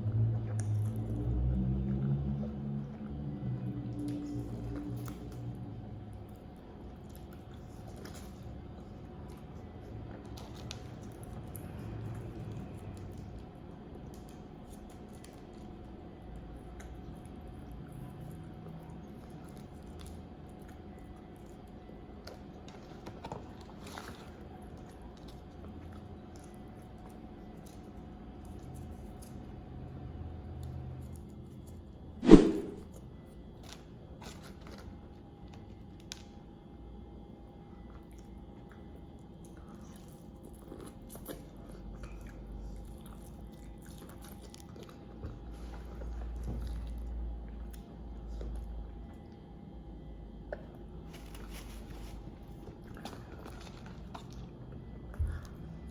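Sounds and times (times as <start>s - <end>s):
person chewing food: 38.0s - 49.5s.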